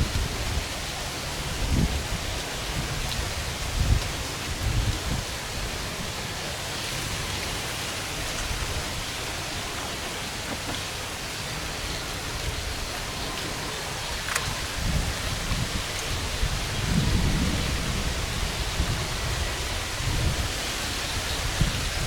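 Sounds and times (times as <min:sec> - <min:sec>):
steady outdoor hiss: 0:00.0 - 0:22.0.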